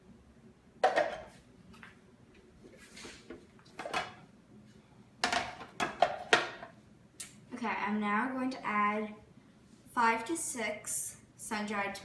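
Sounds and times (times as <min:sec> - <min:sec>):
kitchen items knocking and clattering: 0:00.8 - 0:01.4, 0:03.7 - 0:04.2, 0:05.2 - 0:06.8.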